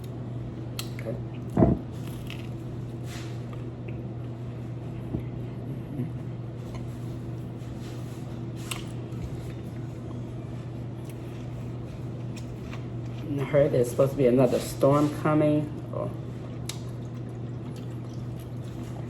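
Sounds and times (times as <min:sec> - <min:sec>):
person chewing: 0:00.8 - 0:02.8, 0:11.0 - 0:13.3, 0:16.4 - 0:19.0.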